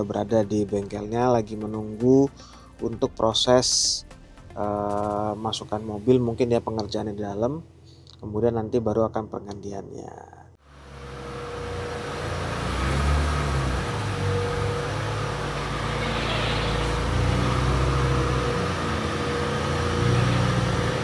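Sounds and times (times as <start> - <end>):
car engine running at low speed: 10.6 - 21.0.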